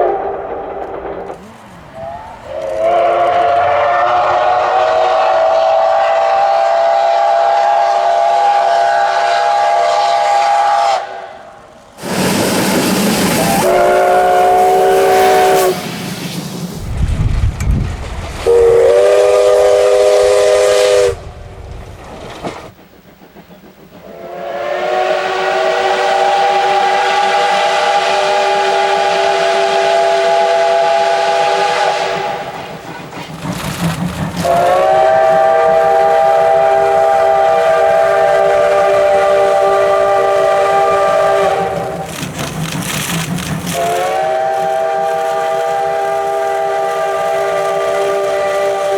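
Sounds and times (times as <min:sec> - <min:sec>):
steam locomotive whistle blasts: 0:00.0 - 0:00.4, 0:01.9 - 0:16.1, 0:18.4 - 0:21.3, 0:24.0 - 0:32.8, 0:34.4 - 0:42.1, 0:43.7 - 0:48.9
rushing steam: 0:00.0 - 0:48.9.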